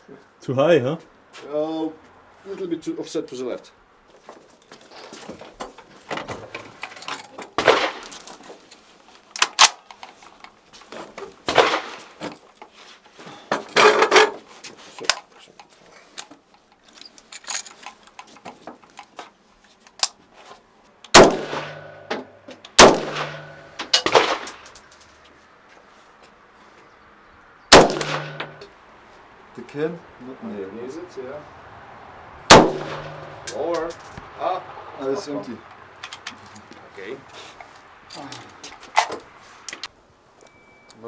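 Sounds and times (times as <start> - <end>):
gunshots: 21.1 - 22.0, 22.8 - 24.5, 27.7 - 28.6, 32.5 - 33.4.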